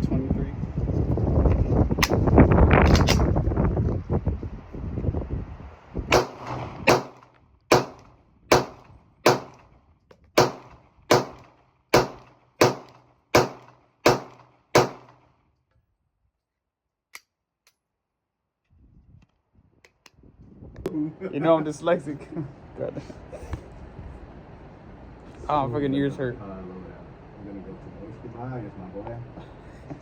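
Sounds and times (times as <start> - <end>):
pistol shots echoing: 6.1 - 9.6, 10.4 - 15.2.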